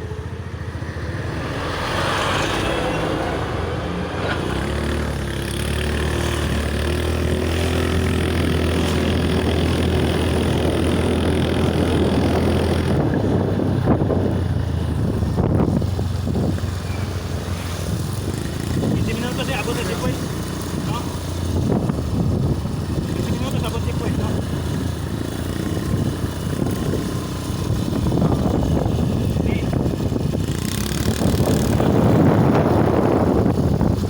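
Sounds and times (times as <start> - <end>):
engine running: 0.0 - 34.0.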